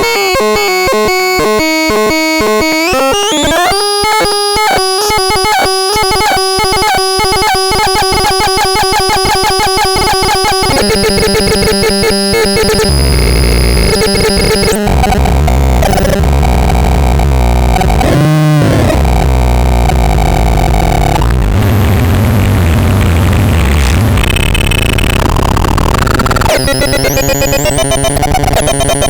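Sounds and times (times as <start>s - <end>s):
buzzing synth tones: 1.4s - 29.0s
rising and falling pitch sweep: 2.3s - 15.2s, 21.1s - 29.0s
harsh electronic noise: 2.4s - 29.0s.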